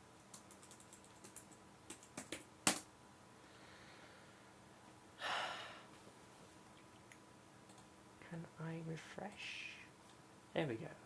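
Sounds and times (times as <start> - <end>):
keyboard and mouse clicks: 0.3 - 2.9, 7.7 - 7.9.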